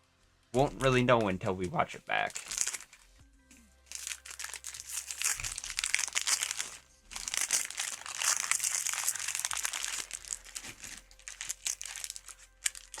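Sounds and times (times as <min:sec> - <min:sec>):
foil wrappers crinkling: 0:02.3 - 0:03.0, 0:03.9 - 0:13.0.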